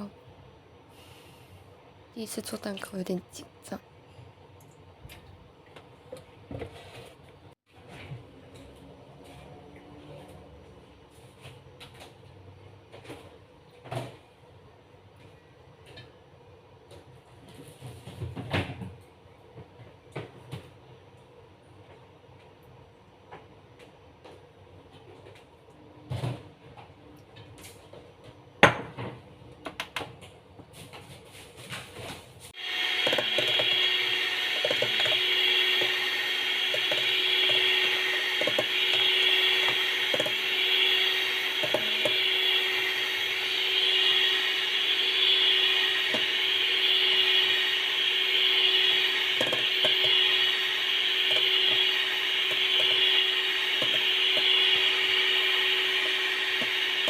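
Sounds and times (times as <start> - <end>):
electric mixer running: 32.6 - 57.0.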